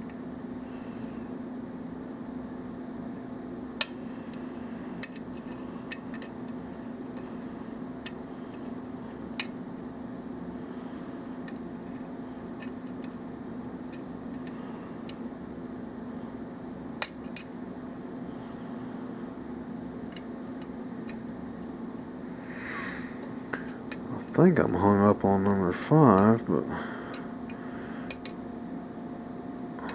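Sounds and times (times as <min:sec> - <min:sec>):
steady low hum: 0:00.0 - 0:29.9.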